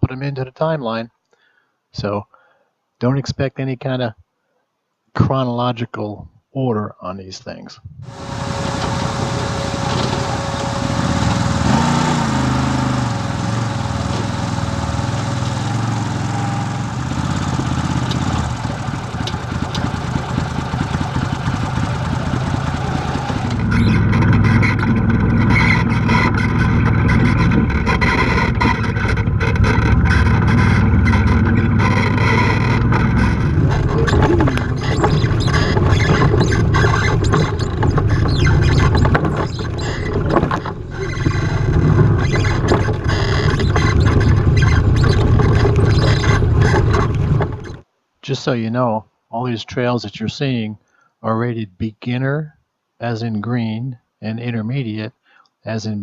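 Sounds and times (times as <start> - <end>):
utility vehicle engine running: 8.0 - 47.8.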